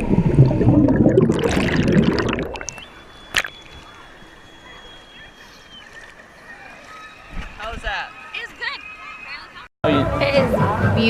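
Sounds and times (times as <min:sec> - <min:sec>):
rushing sloshing water: 0:00.0 - 0:04.5.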